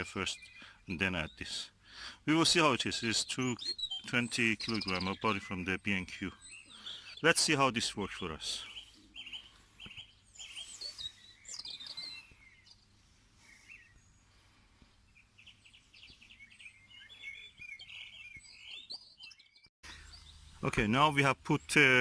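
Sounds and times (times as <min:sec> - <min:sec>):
small birds chirping: 0:00.0 - 0:22.0.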